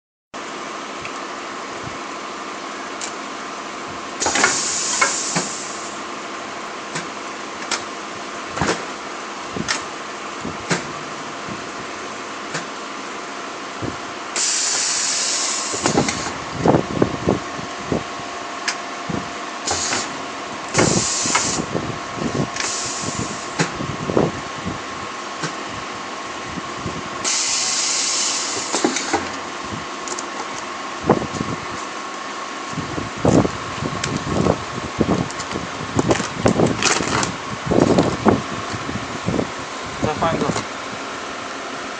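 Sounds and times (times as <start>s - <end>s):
loud hiss bursts: 4.2s - 6.0s, 14.3s - 16.4s, 19.6s - 21.7s, 22.6s - 23.7s, 27.2s - 29.2s
welding machine humming: 14.3s - 16.4s, 19.6s - 21.7s.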